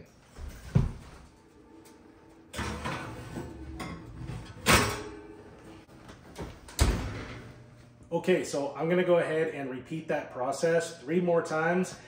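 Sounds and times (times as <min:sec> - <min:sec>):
metal scraping: 0:01.4 - 0:05.9.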